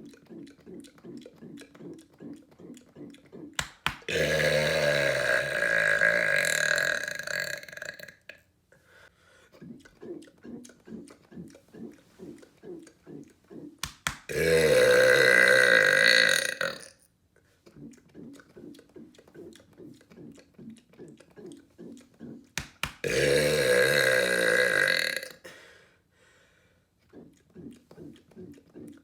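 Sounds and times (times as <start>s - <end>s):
faint rhythmic pulsing: 0.0s - 5.4s, 8.8s - 14.8s, 17.3s - 23.6s, 26.2s - 29.0s
man burping: 4.0s - 8.3s, 14.3s - 16.9s, 23.0s - 25.6s.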